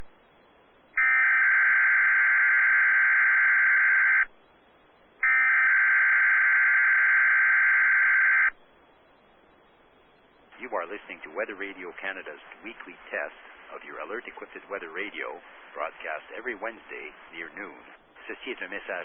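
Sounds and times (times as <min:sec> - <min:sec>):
shrill buzzy data tones: 0:01.0 - 0:04.3, 0:05.2 - 0:08.6.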